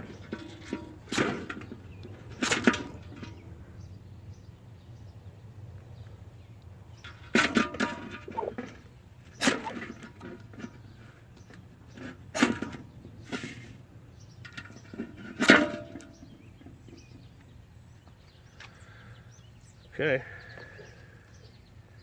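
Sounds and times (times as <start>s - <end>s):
ferro rod scraping: 11.9s - 13.8s.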